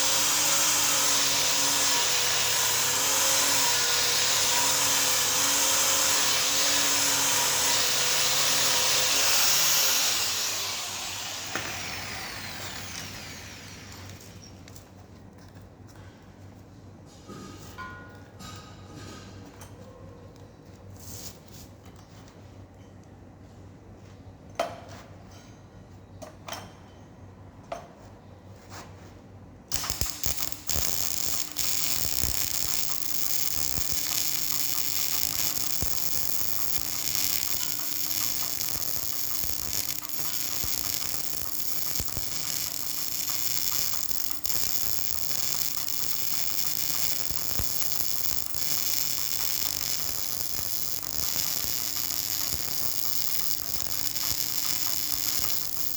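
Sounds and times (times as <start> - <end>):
welding arc crackling: 0.0 - 14.4, 29.7 - 55.9.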